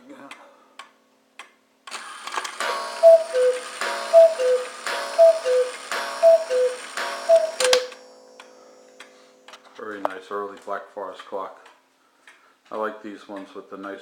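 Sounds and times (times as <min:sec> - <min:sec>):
two-note cuckoo call: 0:02.6 - 0:08.1
clock gong strike: 0:02.6 - 0:08.5.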